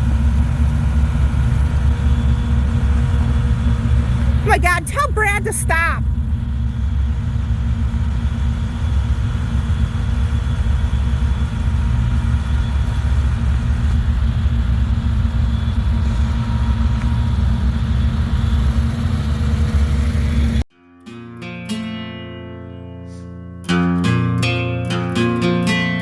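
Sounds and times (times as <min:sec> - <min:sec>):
off-road vehicle engine rumble: 0:00.0 - 0:05.4, 0:06.0 - 0:20.7
acoustic guitar music: 0:04.1 - 0:06.1, 0:20.7 - 0:26.0.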